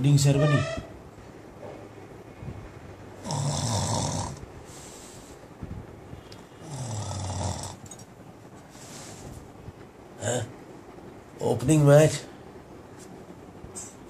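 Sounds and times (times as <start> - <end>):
man snoring: 3.2 - 4.5, 6.6 - 7.9.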